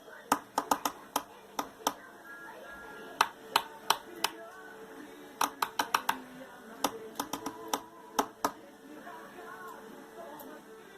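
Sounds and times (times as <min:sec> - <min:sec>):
bird beak tapping hard surface: 0:00.3 - 0:02.0, 0:05.4 - 0:06.2.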